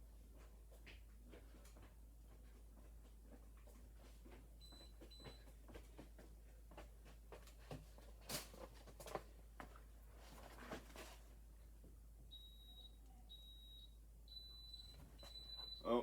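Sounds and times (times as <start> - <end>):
alarm keypad beeps: 12.3 - 16.0.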